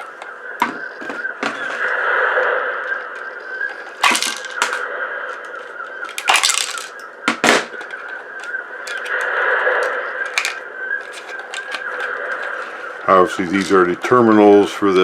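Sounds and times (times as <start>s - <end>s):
steady background noise: 0.0s - 15.0s
hard plastic parts snapping: 3.7s - 12.8s.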